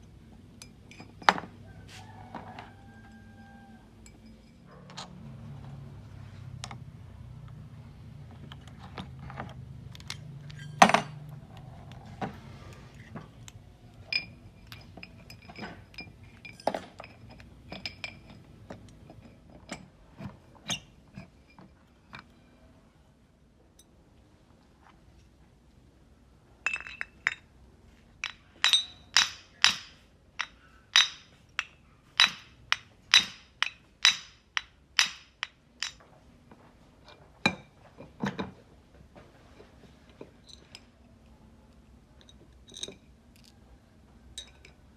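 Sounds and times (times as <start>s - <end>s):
metal tools clinking: 0.6s - 1.5s, 14.1s - 22.4s, 26.6s - 27.5s, 28.2s - 36.0s, 42.2s - 43.5s
ringing taps on metal: 28.2s - 36.1s.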